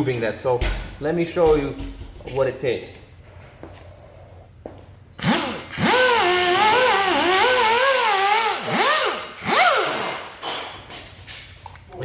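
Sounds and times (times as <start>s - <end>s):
air sander whining: 5.2s - 10.4s.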